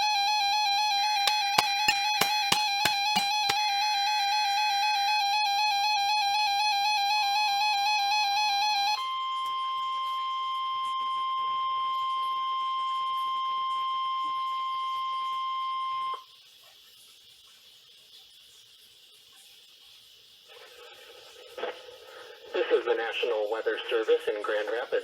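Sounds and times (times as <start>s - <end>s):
steady high alarm tone: 0.0s - 16.2s
faint radio hiss: 16.2s - 25.0s.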